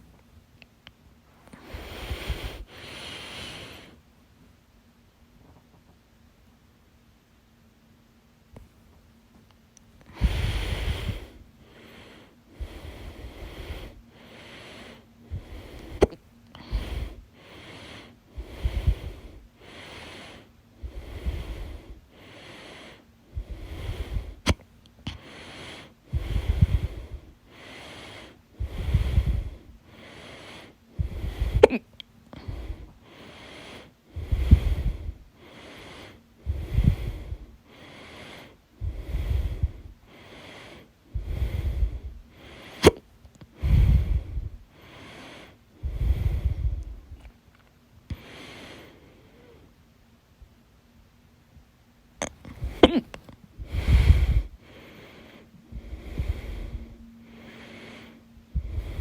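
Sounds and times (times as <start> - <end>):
heavy rhythmic breathing: 1.3 - 4.0, 10.0 - 49.8, 52.2 - 59.0
person hiccuping: 31.6 - 31.9, 52.2 - 53.3.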